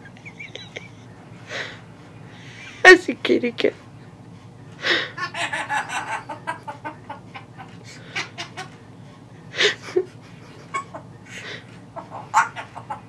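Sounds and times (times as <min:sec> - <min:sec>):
parrot chattering and squawking: 0:05.1 - 0:08.8, 0:11.8 - 0:13.0.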